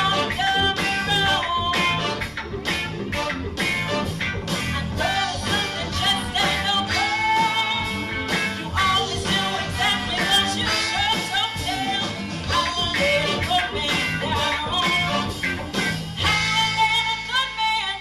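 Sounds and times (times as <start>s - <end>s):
lead vocal singing: 0.0s - 2.2s, 4.6s - 15.4s
steady drum beat: 0.0s - 17.3s
rock and roll band playing: 0.0s - 18.0s.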